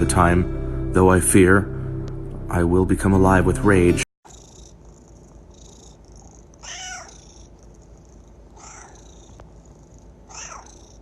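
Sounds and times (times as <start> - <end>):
cat meowing: 6.6 - 7.5, 8.6 - 9.4, 10.3 - 11.0.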